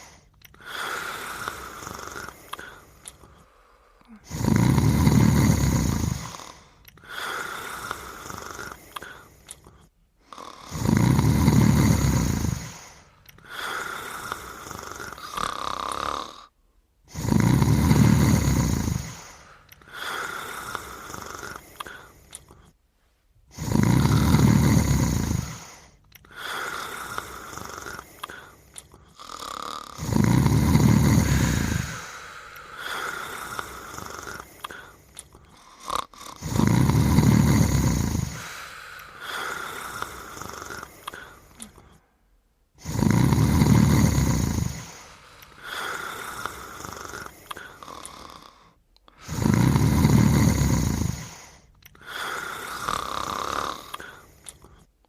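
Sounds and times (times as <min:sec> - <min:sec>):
cartoon snoring: 0:00.0 - 0:03.3, 0:04.1 - 0:22.7, 0:23.5 - 0:42.1, 0:42.8 - 0:55.0
wheezy breath out: 0:23.5 - 0:54.9.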